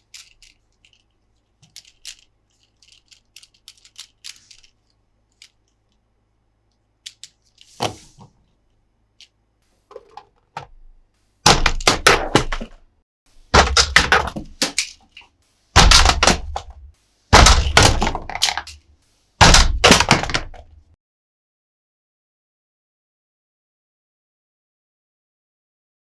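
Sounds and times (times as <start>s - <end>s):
plastic toy parts clattering: 0.0s - 6.0s, 7.0s - 8.3s, 9.9s - 10.9s, 11.5s - 12.8s, 13.5s - 18.8s, 19.4s - 20.7s.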